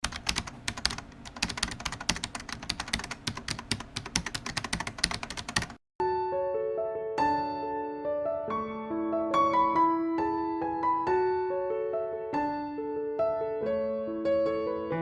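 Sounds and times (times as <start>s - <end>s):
typing on computer keyboard: 0.0s - 5.8s
soft piano music: 6.0s - 15.0s.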